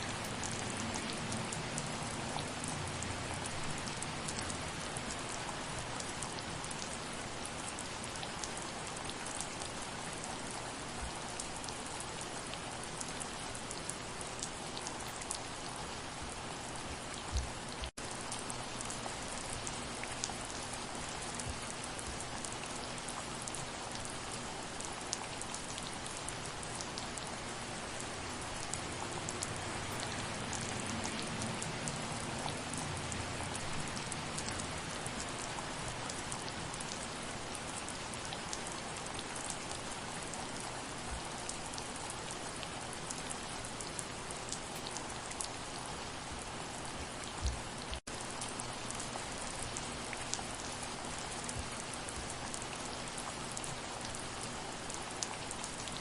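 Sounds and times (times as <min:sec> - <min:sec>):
steady rain: 0:00.0 - 0:56.0
raindrops ticking: 0:42.9 - 0:45.6.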